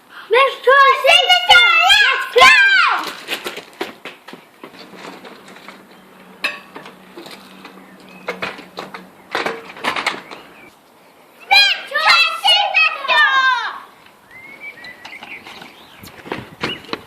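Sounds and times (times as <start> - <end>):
hard objects clicking and knocking: 3.1 - 10.5.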